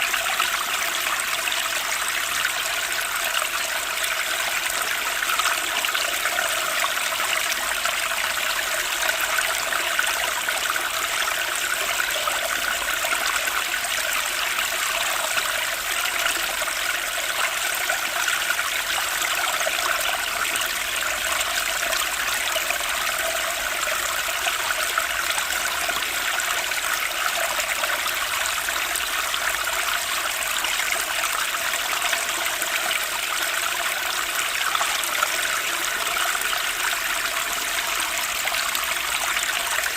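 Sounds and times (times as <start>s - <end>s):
flowing water: 0.0s - 39.9s.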